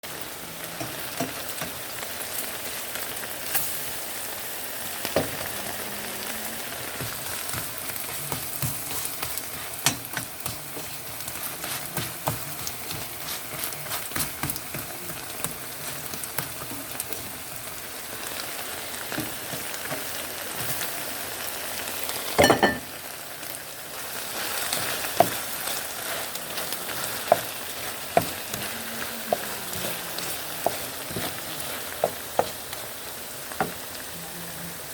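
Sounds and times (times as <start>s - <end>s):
food sizzling in a pan: 0.0s - 34.9s
stirring clicks and knocks: 6.9s - 17.6s, 23.9s - 32.9s.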